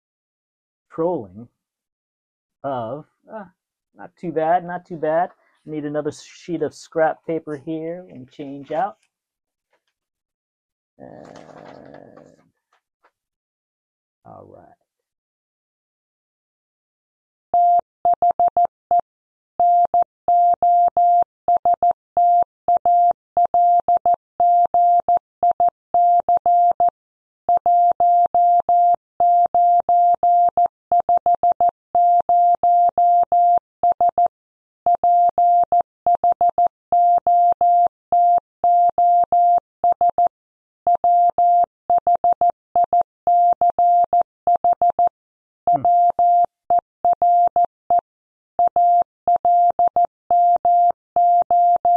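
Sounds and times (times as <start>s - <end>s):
morse code beeps: 35.0s - 40.3s, 40.9s - 45.1s, 45.7s - 48.0s, 48.6s - 51.9s.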